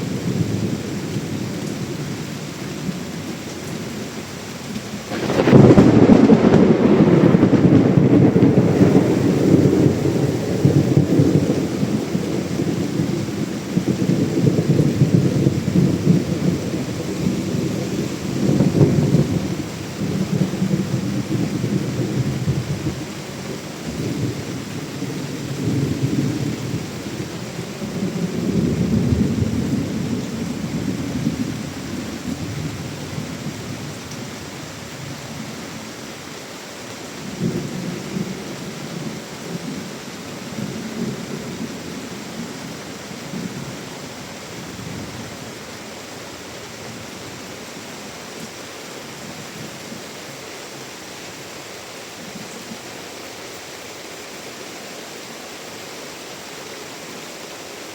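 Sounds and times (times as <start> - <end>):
heavy rain hiss: 0.0 - 57.9
thunder rumbling: 5.1 - 34.0.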